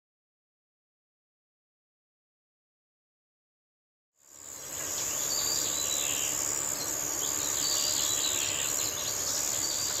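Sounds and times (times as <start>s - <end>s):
insects trilling: 4.2s - 10.0s
birds chirping: 4.4s - 10.0s.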